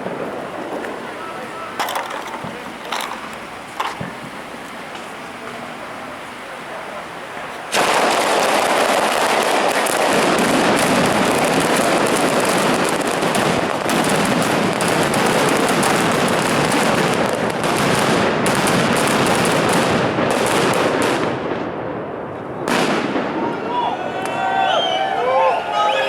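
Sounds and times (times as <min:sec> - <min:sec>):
firecrackers crackling and banging: 0:00.0 - 0:26.0.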